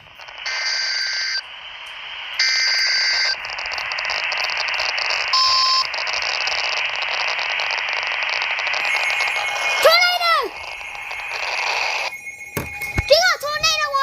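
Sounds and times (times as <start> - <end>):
radio hiss: 0.0 - 13.5
harsh data tone bursts: 0.0 - 14.0
brief steady tone: 8.8 - 13.9.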